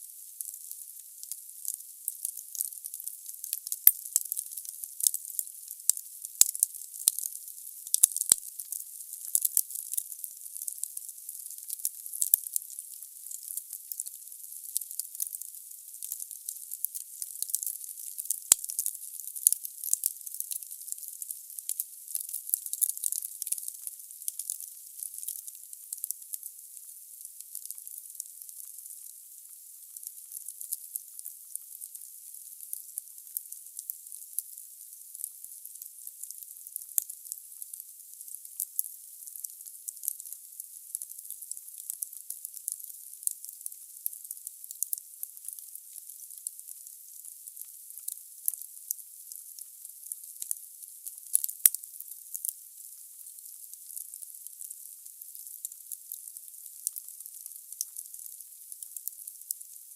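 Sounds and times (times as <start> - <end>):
logs burning crackling and hissing: 0.4 - 7.3.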